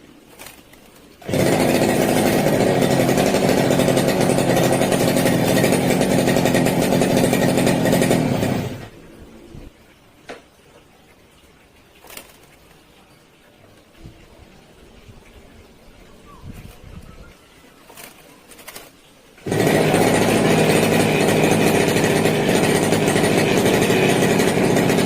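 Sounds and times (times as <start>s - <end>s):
brush cutter engine running: 0.4s - 9.1s, 12.1s - 12.4s, 17.9s - 25.0s.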